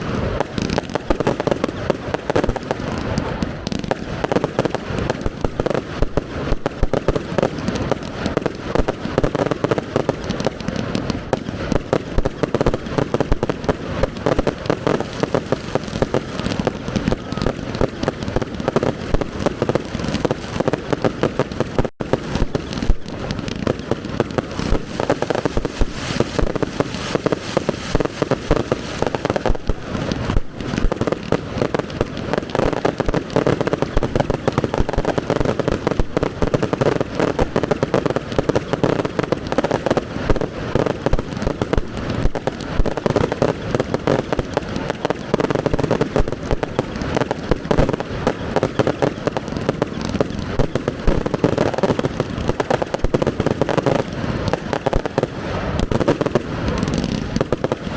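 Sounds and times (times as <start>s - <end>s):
fireworks bangs and crackles: 0.0s - 57.9s.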